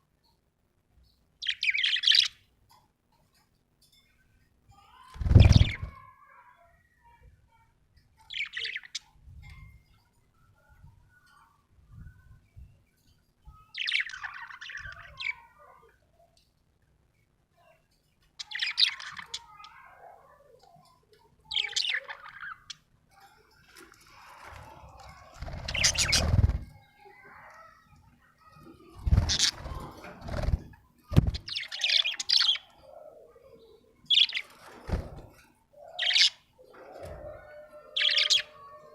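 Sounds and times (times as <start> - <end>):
wing flutter rustling: 23.6 - 26.8, 28.8 - 31.6, 34.4 - 35.6.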